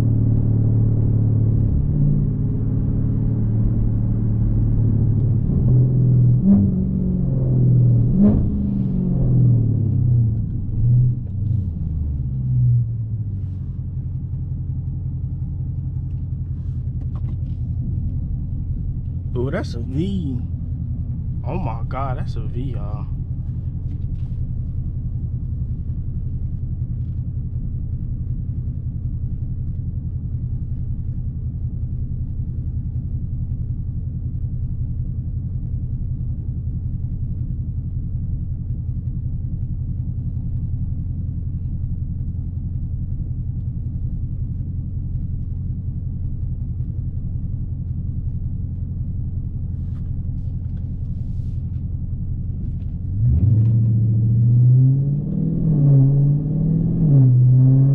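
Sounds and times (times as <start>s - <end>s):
car engine idling: 0.0s - 54.3s.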